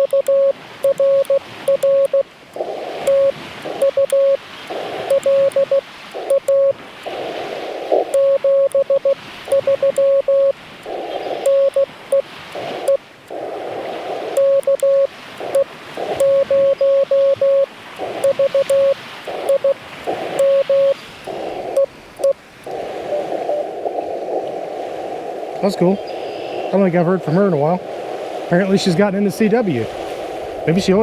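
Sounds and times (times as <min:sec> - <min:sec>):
morse code tone: 0:00.0 - 0:02.3, 0:03.0 - 0:06.8, 0:07.8 - 0:13.0, 0:14.3 - 0:24.5
radio band hiss: 0:00.0 - 0:31.0.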